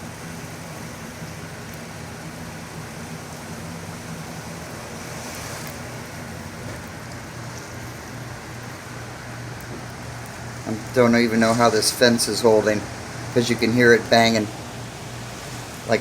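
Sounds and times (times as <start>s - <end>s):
hurricane winds rushing: 0.0s - 16.0s.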